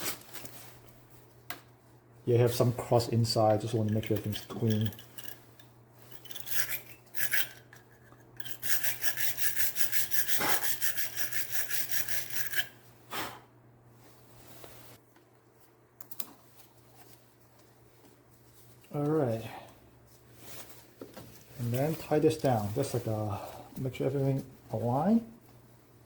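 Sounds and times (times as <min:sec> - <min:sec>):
wire brush scrubbing metal: 0:06.1 - 0:12.8.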